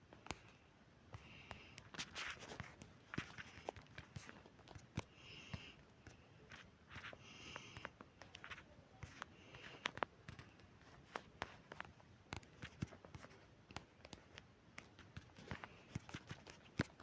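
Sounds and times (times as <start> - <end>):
faint clicks and taps: 0.0 - 17.0.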